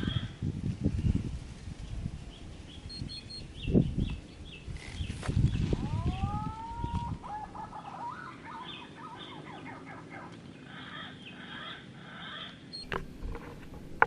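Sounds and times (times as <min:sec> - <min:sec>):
birds chirping and whistling: 0:02.3 - 0:12.9.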